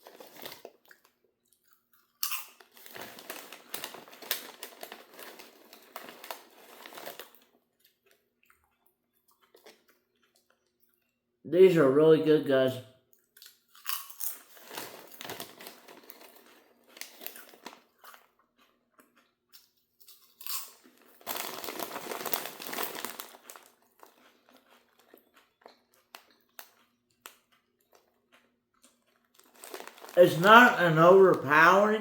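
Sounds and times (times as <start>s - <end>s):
chip bag crinkling: 0.0s - 1.2s, 2.2s - 7.6s, 13.8s - 32.0s
potato chips crunching: 0.0s - 10.9s, 13.4s - 32.0s.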